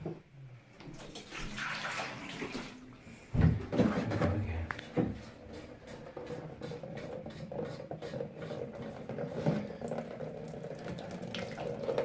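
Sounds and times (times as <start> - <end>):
water trickling into container: 1.0 - 2.9, 8.5 - 12.0.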